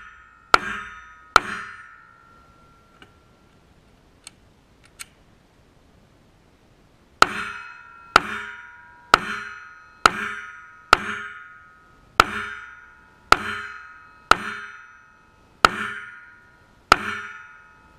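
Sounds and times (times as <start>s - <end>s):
bullets hitting steel plate: 0.0s - 3.2s, 7.2s - 17.9s.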